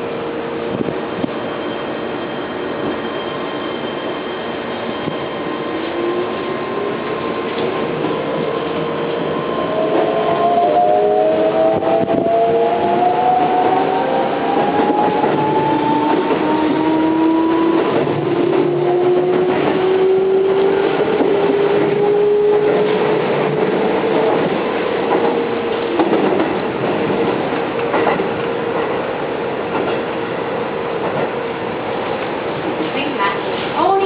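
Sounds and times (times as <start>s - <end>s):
electric train motor whine: 0.1s - 23.6s
train wheels clicking over rail joints: 22.7s - 29.0s.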